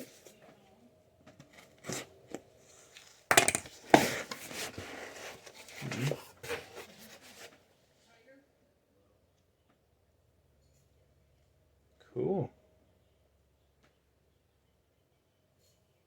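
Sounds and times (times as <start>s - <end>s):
cardboard scraping and knocking: 3.5s - 7.5s
cardboard tearing and rustling: 3.9s - 7.5s.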